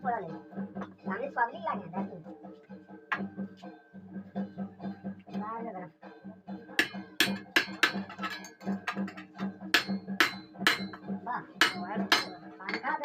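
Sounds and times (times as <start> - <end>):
hammer striking iron: 6.8 - 13.0.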